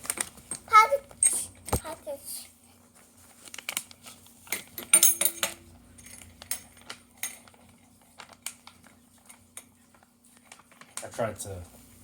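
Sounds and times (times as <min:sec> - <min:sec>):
metal parts clinking: 0:04.8 - 0:07.5.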